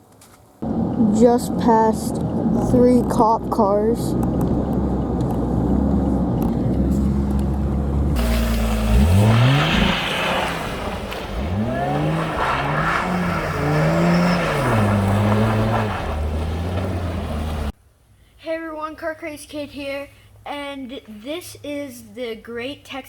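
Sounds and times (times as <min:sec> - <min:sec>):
sports car engine revving: 0:00.6 - 0:17.7.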